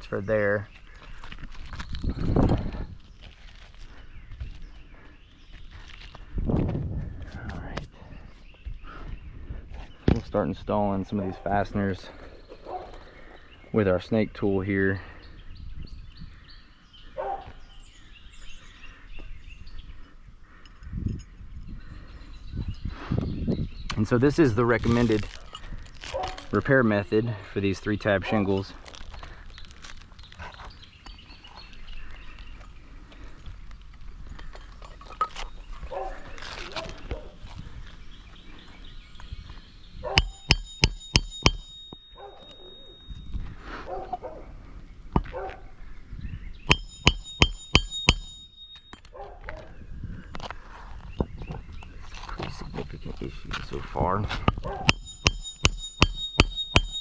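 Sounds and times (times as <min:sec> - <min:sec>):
small birds chirping: 0:00.0 - 0:06.4, 0:07.1 - 0:57.0
outdoor background noise: 0:00.0 - 0:57.0.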